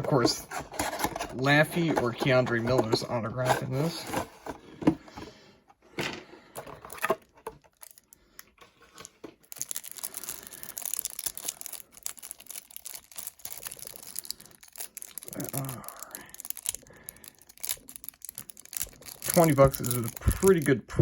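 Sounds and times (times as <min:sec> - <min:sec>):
plastic wrapping crinkling and tearing: 0:06.8 - 0:20.9.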